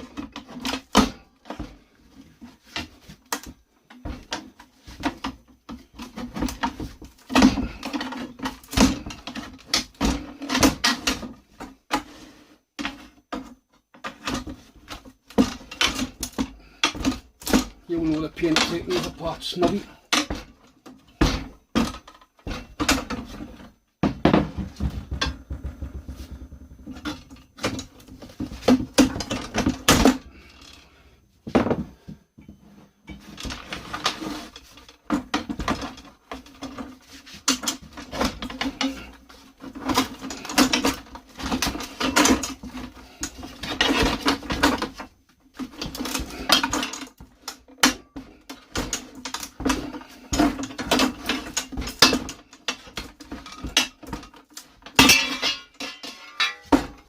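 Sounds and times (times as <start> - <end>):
metal clanking and scraping: 32.5 - 57.0.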